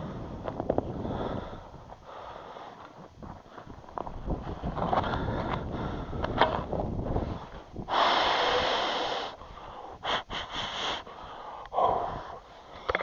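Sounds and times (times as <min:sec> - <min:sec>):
person breathing hard: 0:00.9 - 0:03.8, 0:05.0 - 0:06.4, 0:07.1 - 0:13.0.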